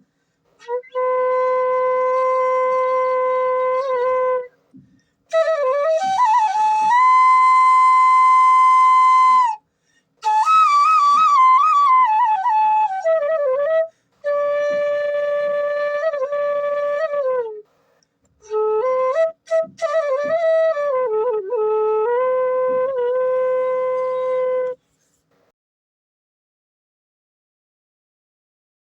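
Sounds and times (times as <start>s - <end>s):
bamboo flute melody: 0.6s - 9.6s, 10.2s - 17.7s, 18.4s - 24.8s.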